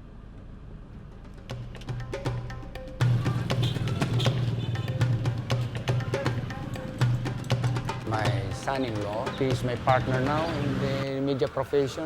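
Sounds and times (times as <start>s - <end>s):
sharp percussion hits: 1.1s - 11.1s.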